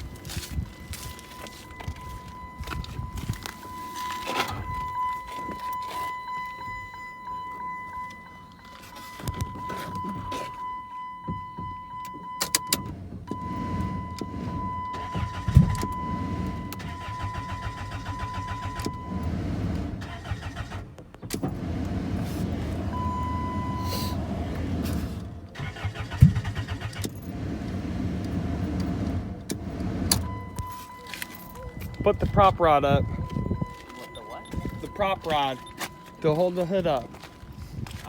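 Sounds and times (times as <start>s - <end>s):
car starter cranking engine: 0.0s - 10.7s, 11.4s - 38.0s
electronic warning chime: 0.0s - 19.3s, 30.2s - 37.8s.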